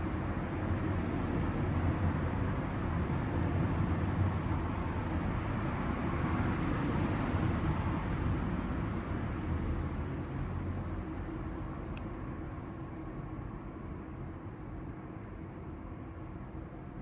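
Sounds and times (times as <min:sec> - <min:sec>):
fire rumbling in wood stove: 0:00.0 - 0:17.0.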